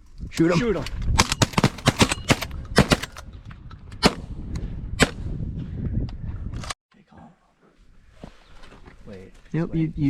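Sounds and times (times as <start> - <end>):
shotgun shots: 1.4 - 3.3.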